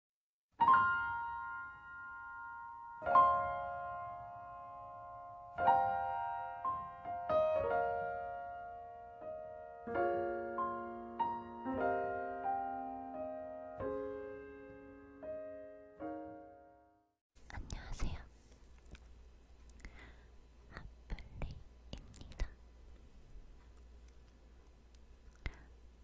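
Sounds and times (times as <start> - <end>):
slow gentle piano music: 0.5 - 18.5.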